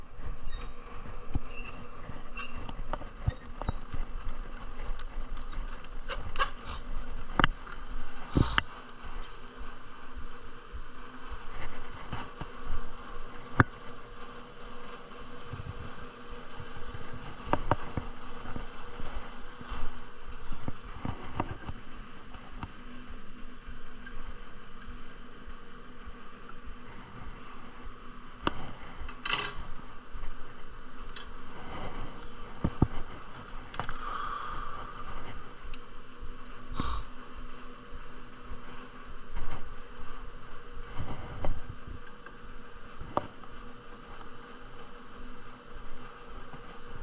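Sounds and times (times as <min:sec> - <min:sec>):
faint machine hum: 0:00.0 - 0:47.0.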